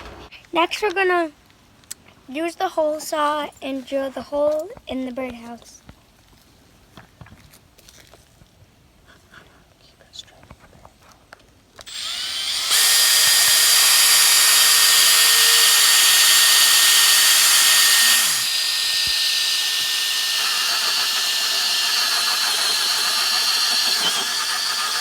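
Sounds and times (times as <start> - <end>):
power drill cutting wood: 11.8 - 25.0.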